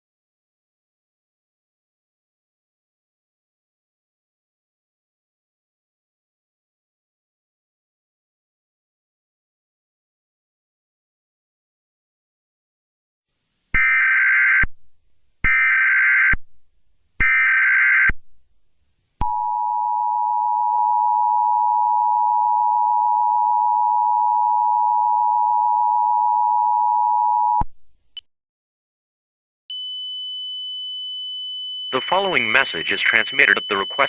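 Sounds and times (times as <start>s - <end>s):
digital data bursts: 32.0s - 34.0s
high steady tone: 32.0s - 34.0s
two-tone attention signal: 32.0s - 34.0s.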